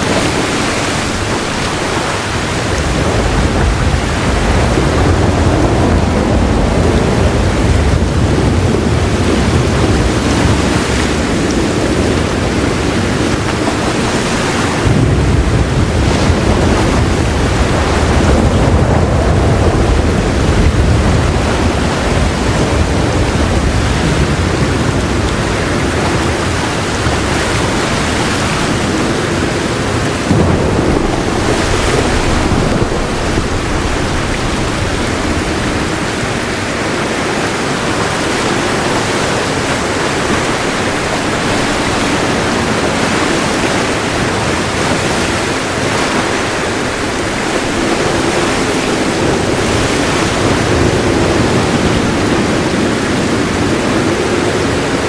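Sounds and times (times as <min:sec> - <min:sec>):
heavy rain falling: 0:00.0 - 0:55.0
soft rolling thunder: 0:02.6 - 0:12.6, 0:14.7 - 0:36.8.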